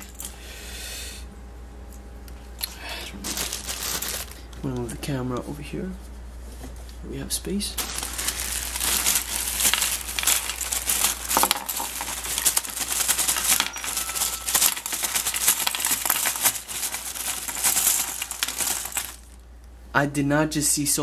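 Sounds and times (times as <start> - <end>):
bag crinkling: 2.6 - 5.0, 7.7 - 19.6
plastic figures clattering: 3.2 - 5.0, 7.8 - 19.4.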